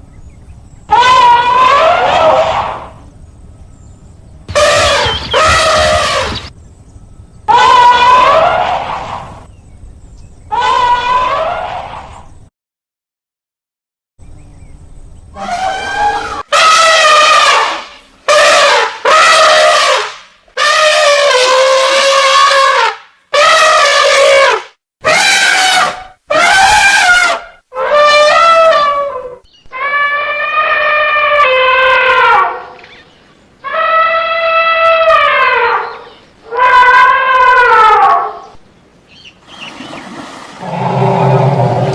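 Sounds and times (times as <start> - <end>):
elephant trumpeting: 0.9 - 3.0, 4.5 - 6.5, 7.5 - 9.5, 10.5 - 12.2, 15.4 - 20.0, 20.6 - 32.6, 33.6 - 38.4, 39.4 - 41.9.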